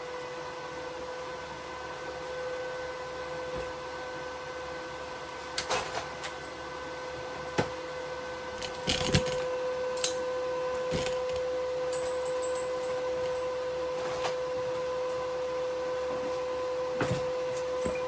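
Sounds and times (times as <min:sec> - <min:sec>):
welding arc buzzing: 0:08.5 - 0:13.4.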